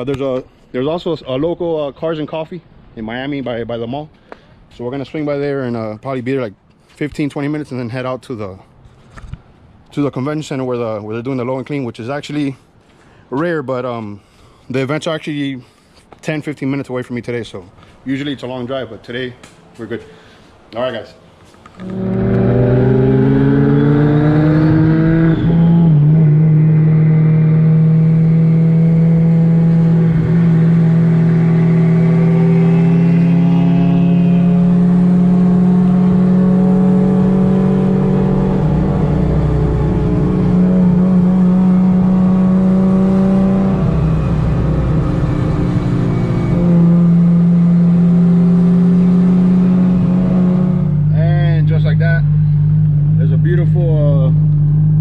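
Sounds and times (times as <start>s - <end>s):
car engine accelerating and droning: 21.8s - 55.0s.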